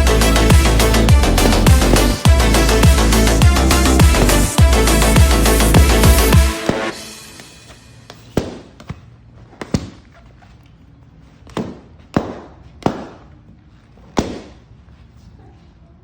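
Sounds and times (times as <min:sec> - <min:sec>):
balloons popping: 0:00.0 - 0:08.8.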